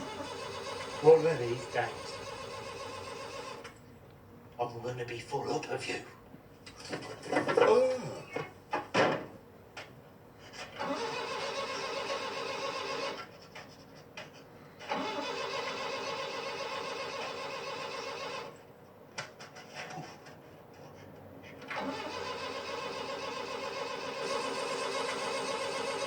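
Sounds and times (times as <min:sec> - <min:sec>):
engine starter cranking: 0:00.0 - 0:03.7, 0:10.8 - 0:13.2, 0:14.8 - 0:18.5, 0:21.7 - 0:26.0.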